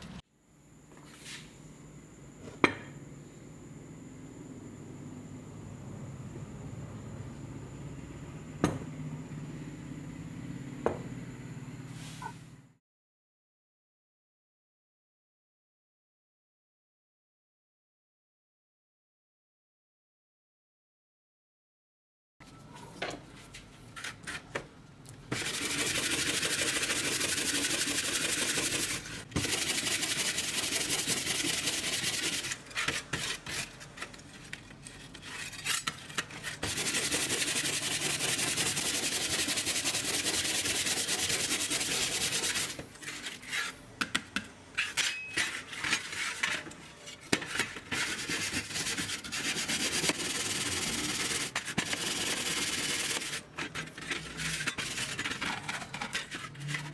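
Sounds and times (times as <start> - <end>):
abrasive sanding on metal: 25.4 - 33.7, 36.5 - 43.8, 47.9 - 53.5.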